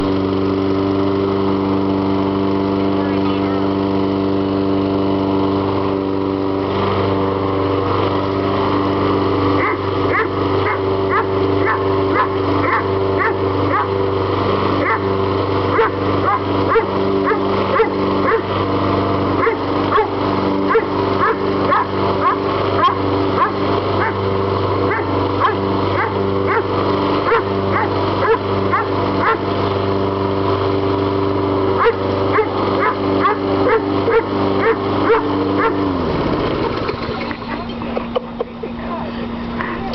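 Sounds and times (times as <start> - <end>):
lawnmower engine running: 0.0 - 39.9
dog barking and yipping: 9.6 - 14.0, 14.8 - 15.1, 15.7 - 18.5, 19.4 - 24.2, 24.9 - 29.4, 31.8 - 35.8.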